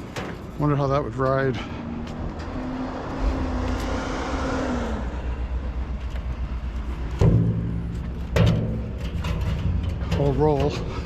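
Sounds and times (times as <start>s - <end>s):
steady low rumble: 4.7s - 11.0s
empty barrel knocking: 7.2s - 11.0s.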